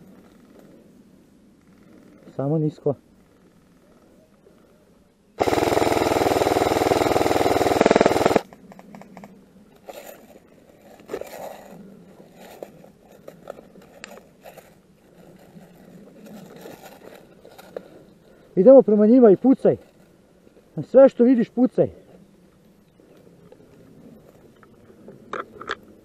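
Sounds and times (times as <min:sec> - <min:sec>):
airsoft gun full-auto burst: 0:05.4 - 0:08.5.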